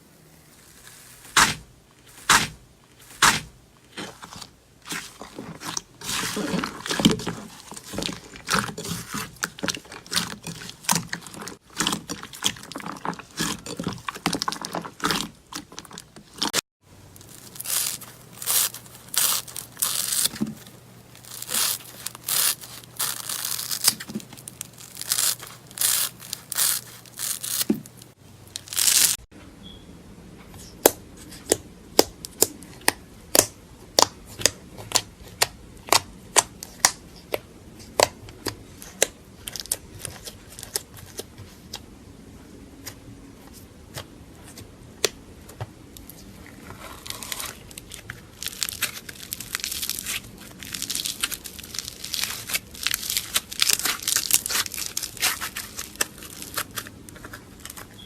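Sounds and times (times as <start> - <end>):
slime crackling and popping: 17.2 - 29.2, 47.0 - 58.0.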